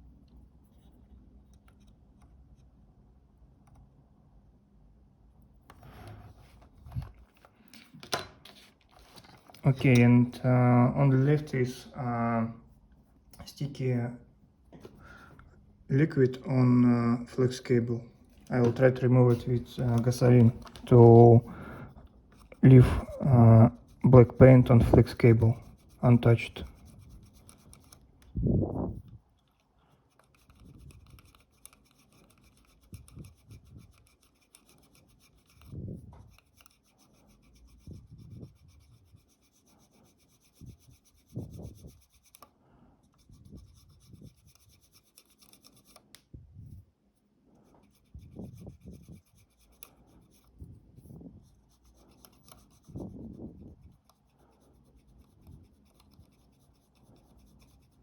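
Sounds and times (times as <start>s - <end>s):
rubbing and scraping strokes: 5.7s - 7.4s, 14.7s - 58.0s.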